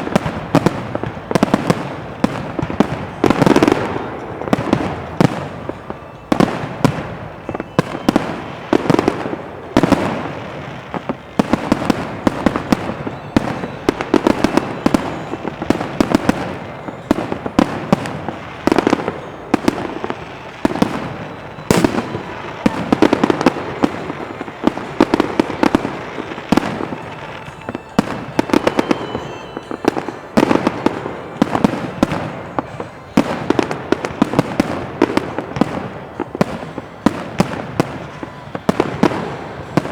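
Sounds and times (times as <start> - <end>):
fireworks bangs: 0.0 - 39.9
fireworks crackling: 0.0 - 39.9.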